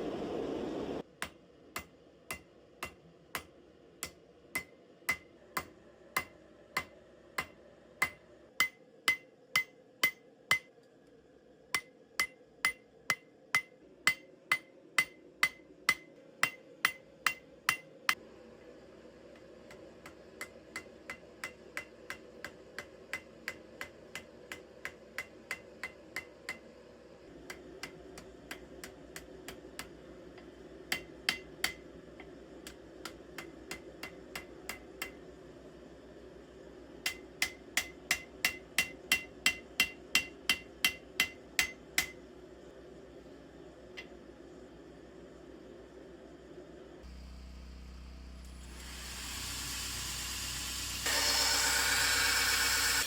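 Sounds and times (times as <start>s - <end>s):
hammer blows on anvil: 37.1s - 42.2s.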